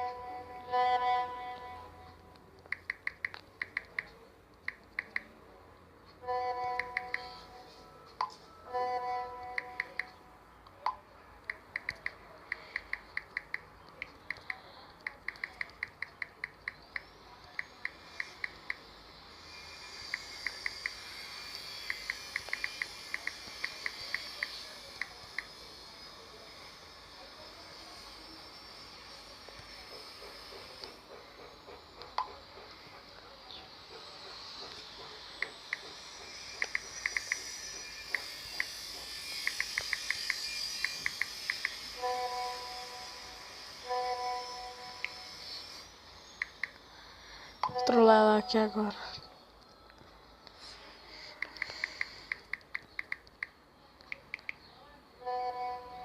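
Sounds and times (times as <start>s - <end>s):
touchscreen keyboard clicks: 2.6s - 5.3s, 6.8s - 7.3s, 10.8s - 17.0s, 51.3s - 54.6s
crickets chirping: 12.5s - 32.8s, 33.8s - 48.0s
short sharp ticks: 51.3s - 54.6s.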